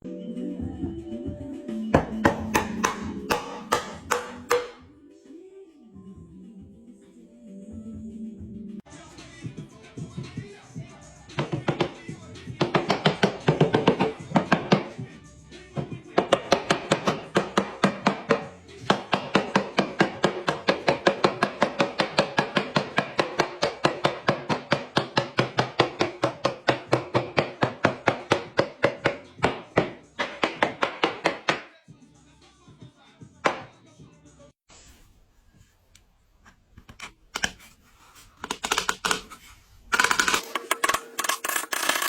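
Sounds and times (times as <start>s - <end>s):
tool knocking on wood: 2.0s - 4.8s.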